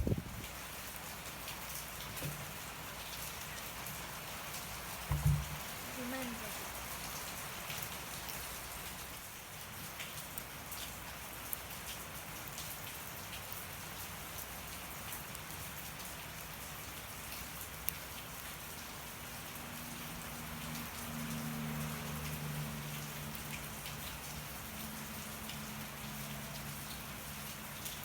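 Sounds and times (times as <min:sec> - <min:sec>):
wood fire crackling and popping: 0:00.0 - 0:18.9, 0:23.3 - 0:24.8
rain falling: 0:00.0 - 0:28.0.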